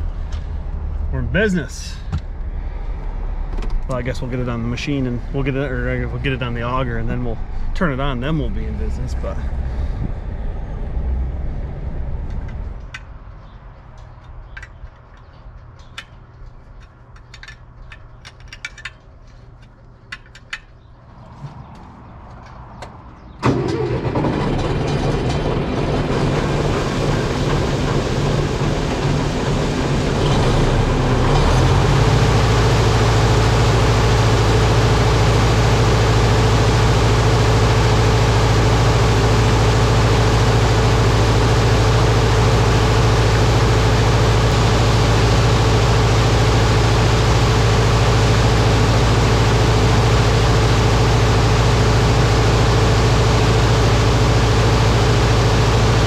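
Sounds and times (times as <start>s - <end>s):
auger engine running: 23.4s - 56.0s.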